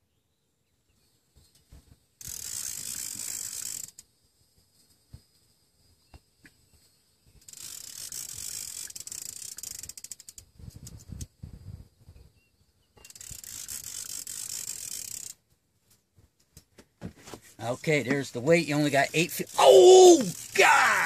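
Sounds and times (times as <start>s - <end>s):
fishing reel ratcheting and whirring: 2.2s - 4.1s, 7.4s - 11.3s, 13.0s - 15.4s, 18.7s - 21.0s.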